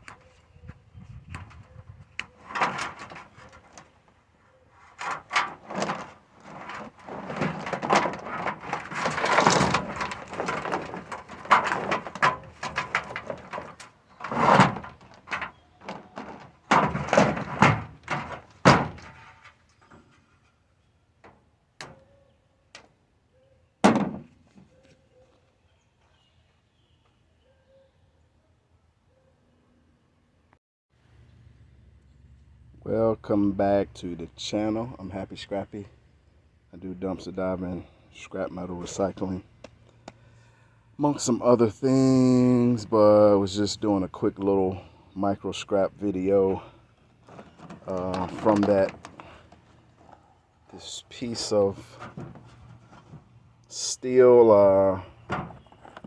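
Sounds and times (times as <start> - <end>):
things knocking and clattering: 5.0 - 20.1, 47.2 - 50.2, 51.4 - 53.4, 55.2 - 56.0
heavy thump: 55.3 - 56.0.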